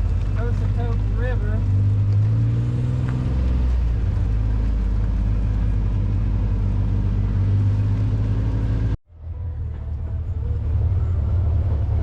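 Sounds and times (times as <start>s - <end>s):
vehicle engine droning: 0.0s - 12.0s.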